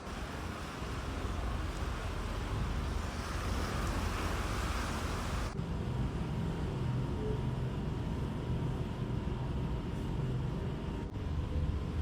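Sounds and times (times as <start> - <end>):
wind: 0.0 - 7.6
low steady rumble: 0.0 - 12.0.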